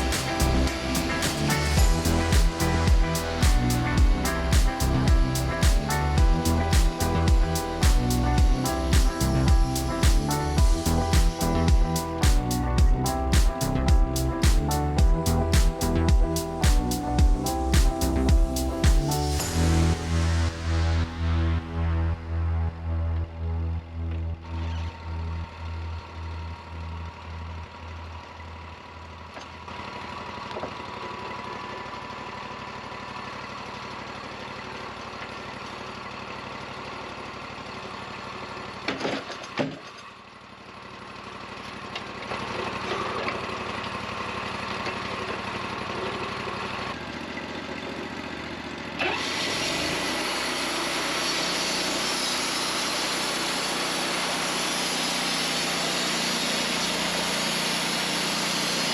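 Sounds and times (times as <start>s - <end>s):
saw blade cutting log: 0.0s - 12.6s, 49.0s - 58.9s
sawmill engine running: 0.0s - 38.8s, 40.8s - 58.9s.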